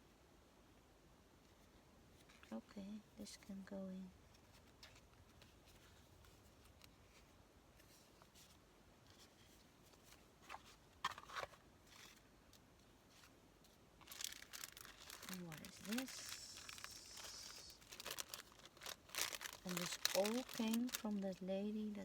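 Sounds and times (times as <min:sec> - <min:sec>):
paper rustling: 0:04.4 - 0:12.3, 0:13.1 - 0:22.0.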